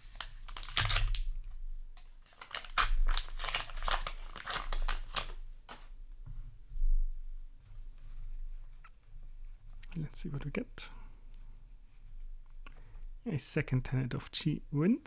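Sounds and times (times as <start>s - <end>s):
foil wrapper tearing and crinkling: 0.0s - 1.4s, 2.2s - 5.8s.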